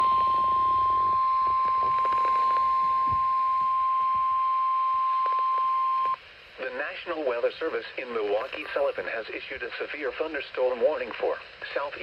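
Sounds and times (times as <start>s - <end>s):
high-pitched warning alarm tone: 0.0s - 6.2s.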